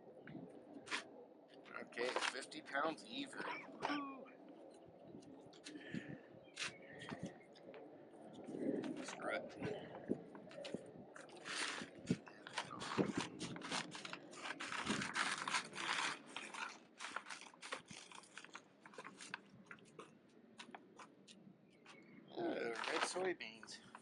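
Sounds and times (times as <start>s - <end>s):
feed sack crinkling and crunching: 11.2s - 20.1s, 22.7s - 23.3s.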